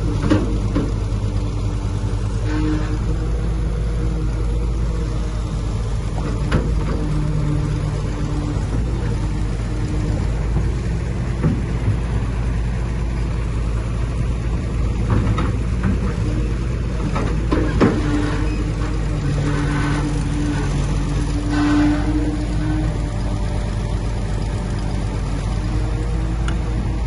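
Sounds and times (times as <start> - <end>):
heavy diesel engine running: 0.0 - 27.0
metal knocks and clanks: 0.1 - 1.1, 6.2 - 7.8, 8.4 - 12.6, 14.9 - 23.0.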